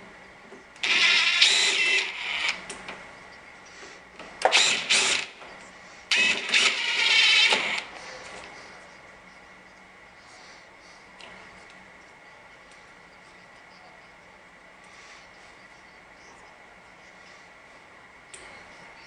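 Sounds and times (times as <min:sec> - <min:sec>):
power drill whirring: 0:00.8 - 0:02.6, 0:04.4 - 0:05.4, 0:06.1 - 0:07.9.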